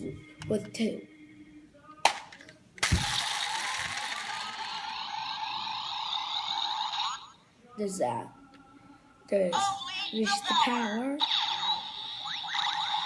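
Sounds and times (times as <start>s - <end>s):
electronic toy sound effect: 2.8s - 7.4s, 10.7s - 13.0s.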